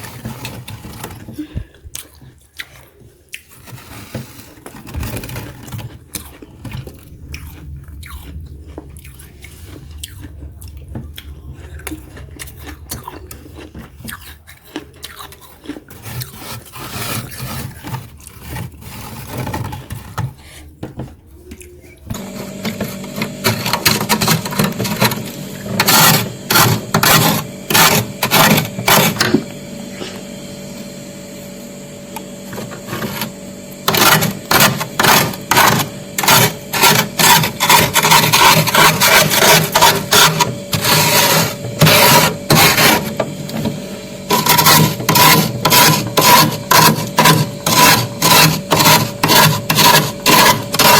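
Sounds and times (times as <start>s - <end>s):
scraping frost from freezer walls: 0.0s - 1.7s, 3.4s - 7.2s, 14.7s - 21.4s, 22.1s - 50.9s
crunching ice being chewed: 0.0s - 20.6s, 21.3s - 30.6s, 32.0s - 50.9s
steady hum: 20.9s - 50.9s.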